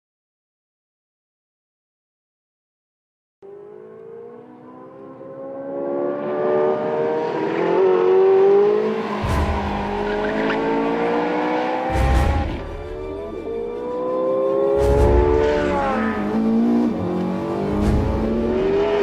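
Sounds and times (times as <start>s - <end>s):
car engine accelerating: 3.4s - 19.0s
low rumbles: 14.8s - 19.0s.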